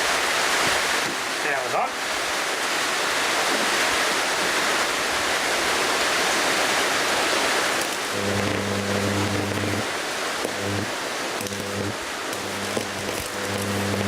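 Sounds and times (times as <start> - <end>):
steady rushing hiss: 0.0 - 14.0
transformer mains hum: 7.9 - 14.0.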